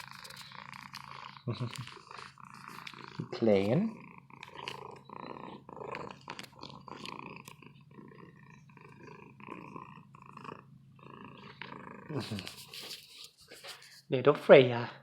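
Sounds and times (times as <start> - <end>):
cat purring: 0.0 - 13.9
light rustling: 12.2 - 14.1.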